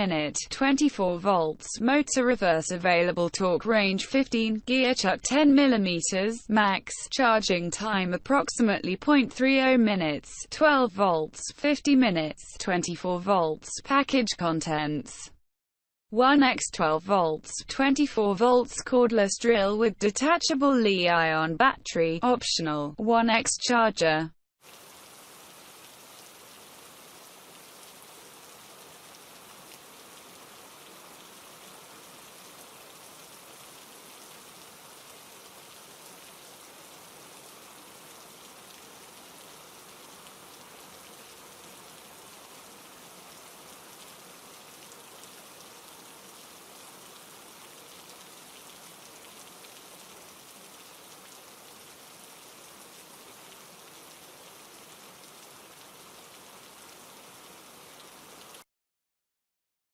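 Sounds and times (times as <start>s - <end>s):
steady rain: 24.6s - 58.6s.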